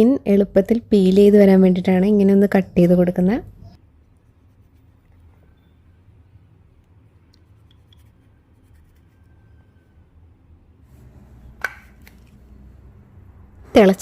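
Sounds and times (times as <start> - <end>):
low hum: 5.3 - 14.0.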